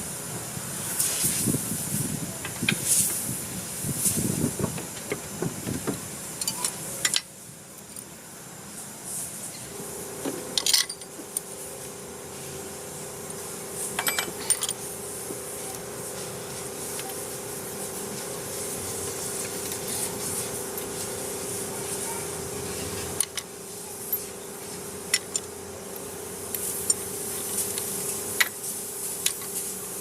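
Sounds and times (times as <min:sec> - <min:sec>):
steady hum: 0:00.0 - 0:30.0
metal tools clinking: 0:10.5 - 0:11.5, 0:14.0 - 0:14.9.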